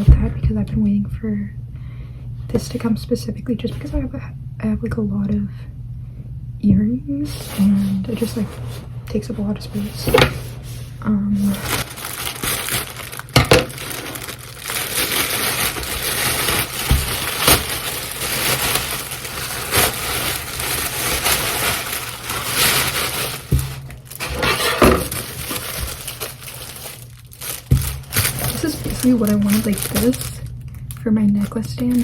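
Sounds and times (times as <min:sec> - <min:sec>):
packaging crinkling and tearing: 0:11.4 - 0:32.0.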